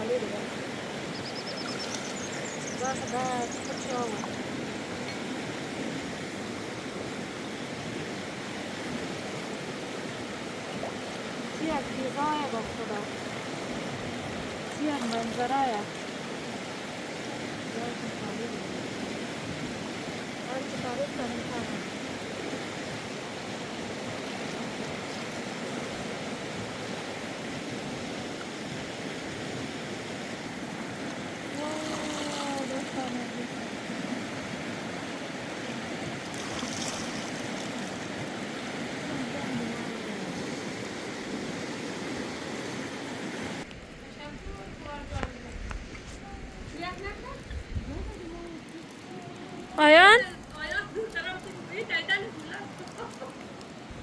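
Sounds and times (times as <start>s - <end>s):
flowing stream rushing: 0.0s - 54.0s.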